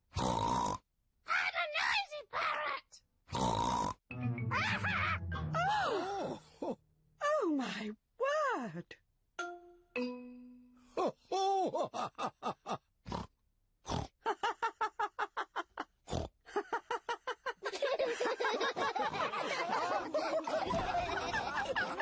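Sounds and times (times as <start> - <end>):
several voices laughing: 11.4 - 12.9, 14.2 - 15.9, 16.5 - 22.0
cartoon pigs snorting and laughing: 11.9 - 14.3, 15.8 - 16.6, 17.6 - 22.0.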